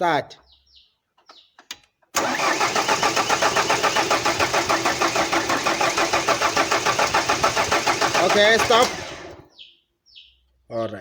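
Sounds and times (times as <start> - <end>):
starter motor cranking engine: 2.2 - 9.5.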